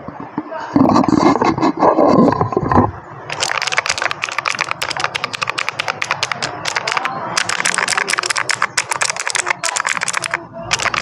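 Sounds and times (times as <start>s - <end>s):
mechanical keyboard key clicks: 3.3s - 11.0s.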